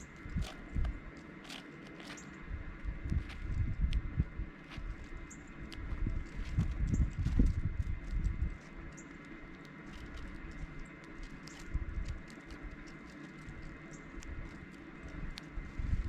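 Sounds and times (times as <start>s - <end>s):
bird chip calls: 1.5s - 2.5s, 8.8s - 15.6s.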